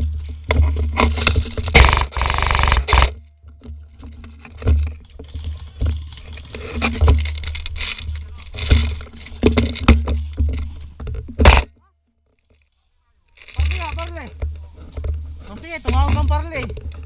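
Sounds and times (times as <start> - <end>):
sharp clicks and knocks: 0.0 - 12.7, 13.3 - 17.0
airsoft gun full-auto burst: 1.8 - 3.2.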